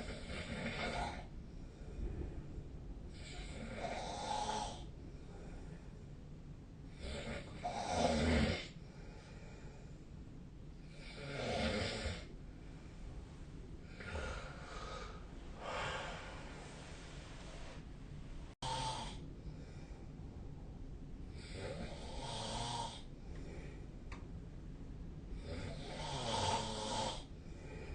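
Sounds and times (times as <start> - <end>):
person snoring: 0.0 - 1.3, 3.2 - 4.9, 6.9 - 8.8, 10.9 - 12.3, 13.8 - 17.8, 18.6 - 19.2, 21.4 - 23.1, 25.4 - 27.3.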